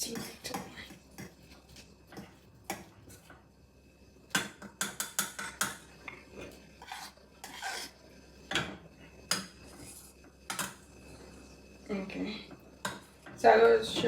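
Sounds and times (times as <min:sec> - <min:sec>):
spoon scraping a pot: 0:04.4 - 0:11.4.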